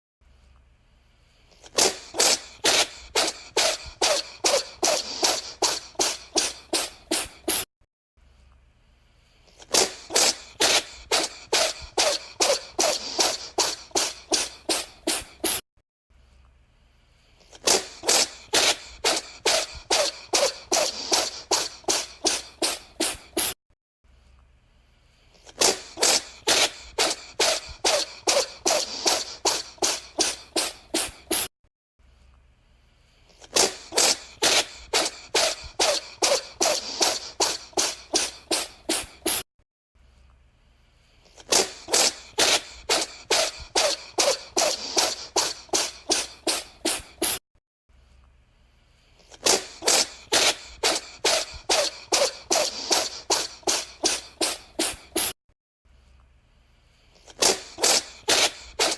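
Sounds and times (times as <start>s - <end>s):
cat sneezing: 1.6s - 7.7s, 9.5s - 15.6s, 17.4s - 23.6s, 25.4s - 31.5s, 33.3s - 39.5s, 41.3s - 47.4s, 49.2s - 55.4s, 57.2s - 58.9s.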